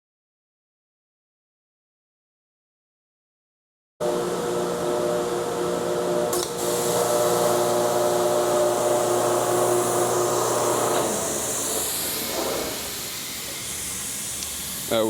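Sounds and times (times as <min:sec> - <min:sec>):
air compressor humming: 0:04.0 - 0:15.0
air hissing: 0:06.4 - 0:15.0.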